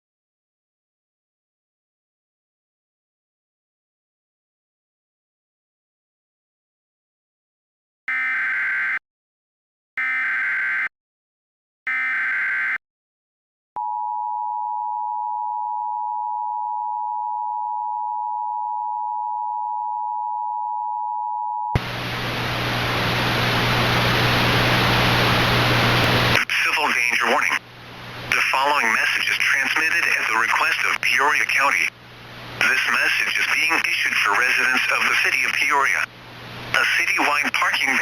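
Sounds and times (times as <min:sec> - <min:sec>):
low hum: 0:21.8 - 0:26.4.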